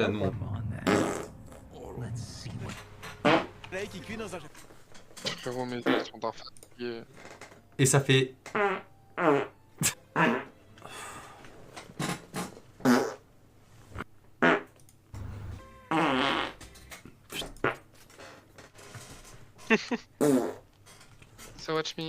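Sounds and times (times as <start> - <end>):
farts: 0.8 - 1.6, 3.2 - 3.5, 8.5 - 10.6, 12.0 - 13.3, 14.4 - 14.8, 15.9 - 16.7, 17.3 - 17.9, 20.2 - 20.7.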